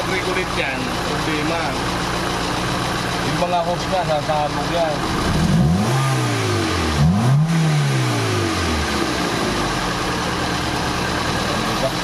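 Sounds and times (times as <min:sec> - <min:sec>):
car engine idling: 0:00.0 - 0:12.0
car engine revving: 0:02.8 - 0:12.0.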